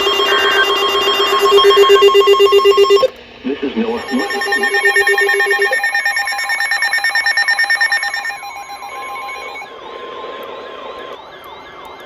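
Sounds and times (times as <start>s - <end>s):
steady tone: 0.0s - 8.1s
rapid pulsing beeps: 0.0s - 9.7s.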